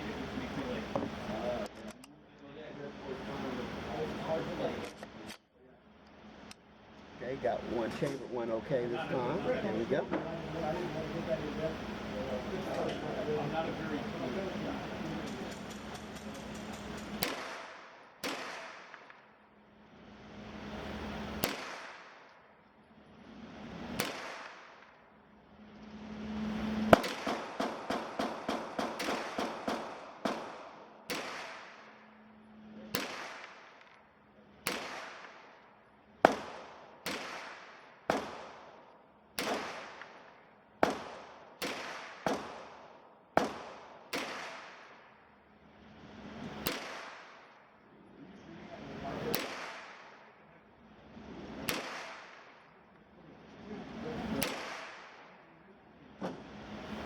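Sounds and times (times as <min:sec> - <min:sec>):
carbine gunshots: 0:14.9 - 0:19.3, 0:21.2 - 0:22.5, 0:23.7 - 0:25.0, 0:26.8 - 0:32.2, 0:32.9 - 0:45.2, 0:46.4 - 0:47.5, 0:49.1 - 0:50.4, 0:51.5 - 0:52.7, 0:54.3 - 0:55.4.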